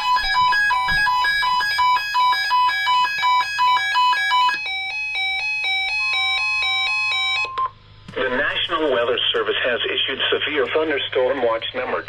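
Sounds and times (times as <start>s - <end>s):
alternating high beeping alarm tones: 0.0s - 7.7s.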